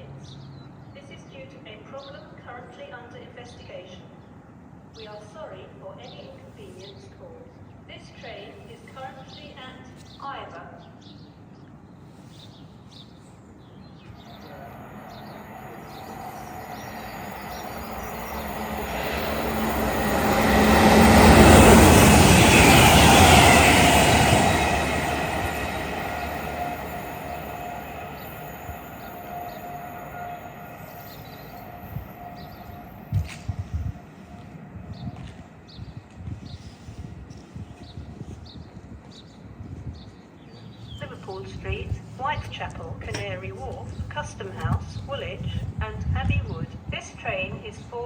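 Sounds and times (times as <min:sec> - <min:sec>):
train passing rumble: 0:11.3 - 0:48.0.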